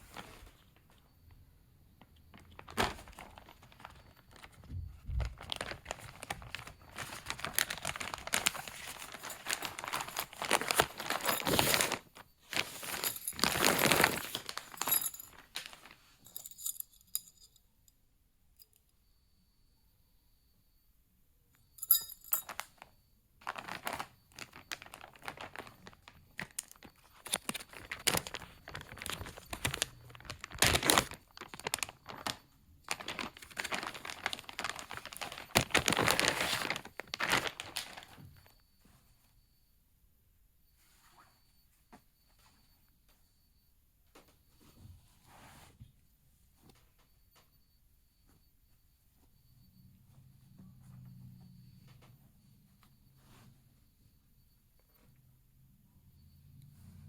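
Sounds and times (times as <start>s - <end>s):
plastic packaging crinkling: 2.0s - 16.0s, 22.4s - 38.5s
plastic tearing: 23.4s - 38.1s.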